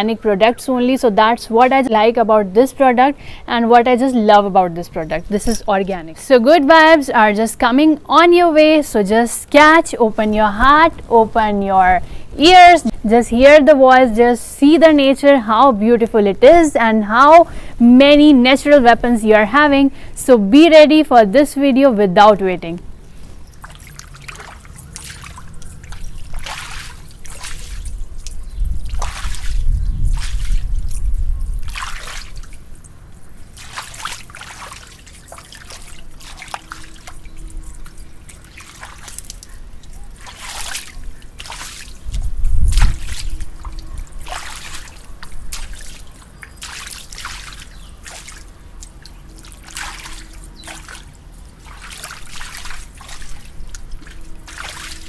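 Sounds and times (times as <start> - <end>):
rainwater dripping and trickling: 22.8 - 55.0.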